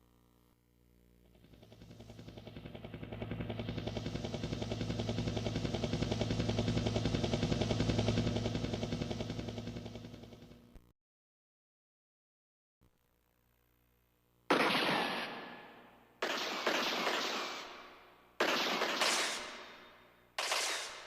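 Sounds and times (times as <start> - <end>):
helicopter rotor sound effect: 1.3 - 10.7, 16.2 - 21.0.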